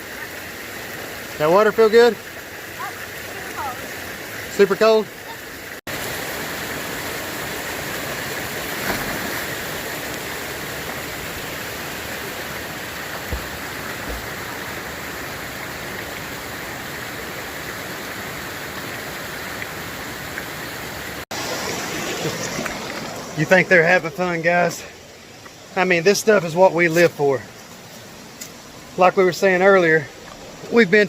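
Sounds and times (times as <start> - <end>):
creek water rushing: 0.0 - 31.0
faint low knocks: 13.2 - 14.6.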